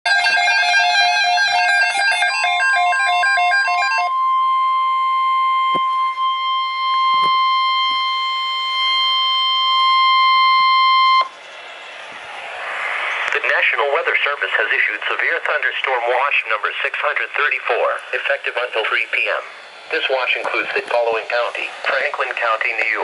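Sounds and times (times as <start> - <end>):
rapid electronic alert beeps: 0.1 - 11.3
steady alarm tone: 0.1 - 11.4.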